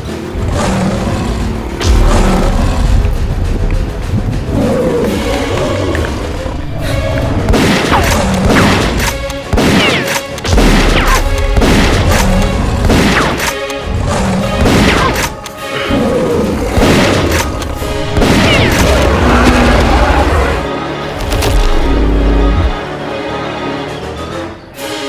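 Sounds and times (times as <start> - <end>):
action background music: 0.0 - 25.0
heavy booming hits: 1.7 - 9.0.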